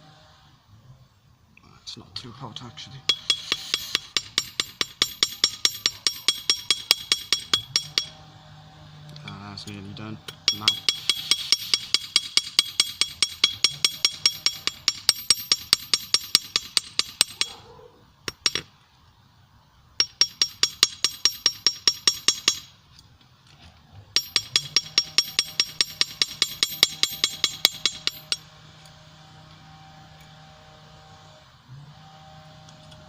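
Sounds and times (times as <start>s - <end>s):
faint steady hum: 0.0s - 33.0s
hammer striking steel on anvil: 3.0s - 8.2s, 9.3s - 17.5s, 18.3s - 18.7s, 20.0s - 22.7s, 24.2s - 28.5s.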